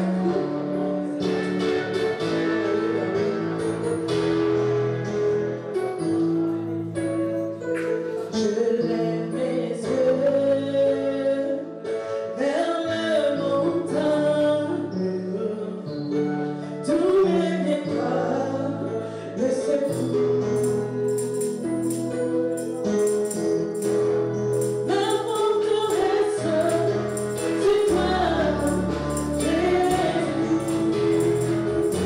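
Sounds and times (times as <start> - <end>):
voices singing gospel music: 24.6 - 32.0.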